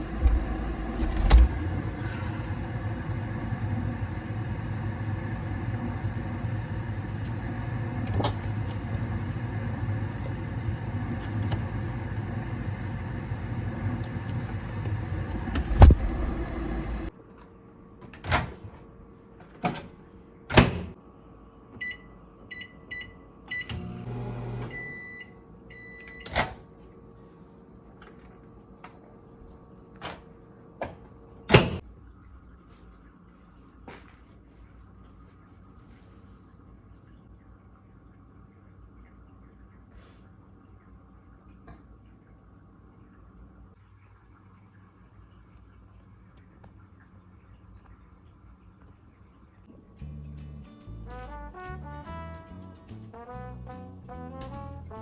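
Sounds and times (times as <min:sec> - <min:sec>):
knocks and clunks: 0:00.0 - 0:01.9
microwave oven humming: 0:00.0 - 0:33.8.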